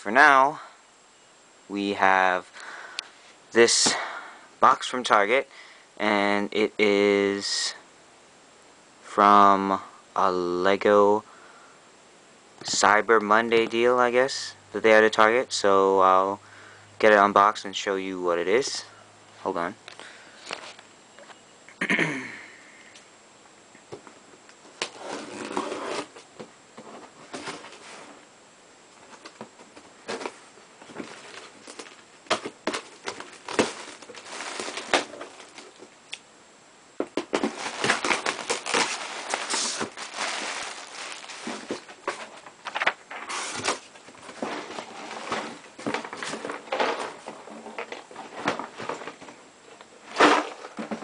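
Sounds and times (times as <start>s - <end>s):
cardboard rustling and crinkling: 24.7s - 28.3s, 29.0s - 35.9s, 37.0s - 49.4s, 50.0s - 51.0s.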